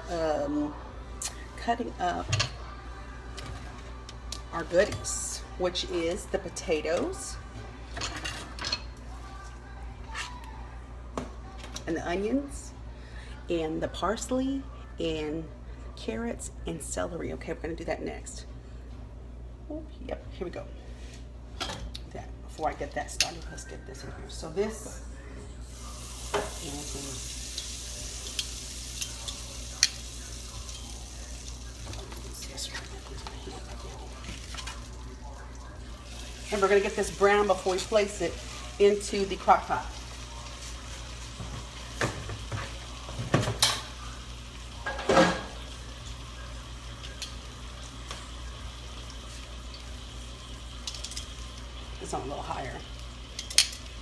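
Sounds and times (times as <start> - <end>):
meat sizzling in oil: 25.7 - 35.0, 45.5 - 54.0
cookware clanking: 41.4 - 44.0, 44.8 - 45.6.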